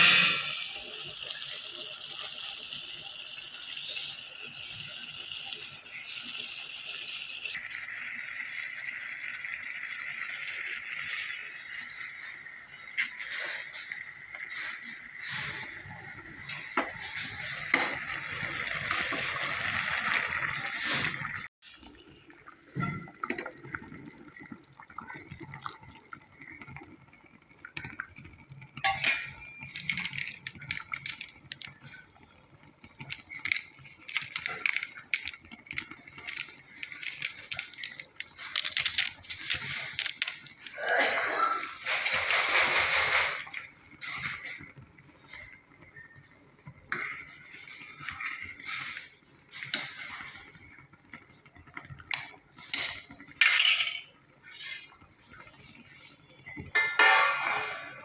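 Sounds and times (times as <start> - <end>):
water running: 0.0 - 58.0
kitchen clinks and splashes: 22.4 - 24.0, 28.8 - 32.1, 52.6 - 55.0, 56.4 - 58.0.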